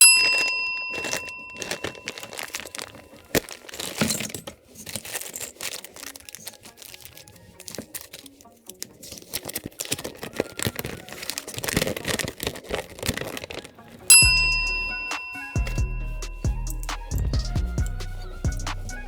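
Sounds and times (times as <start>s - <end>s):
high ringing tone: 0.0s - 3.2s, 14.1s - 16.9s
crinkling handling noise: 0.0s - 19.0s.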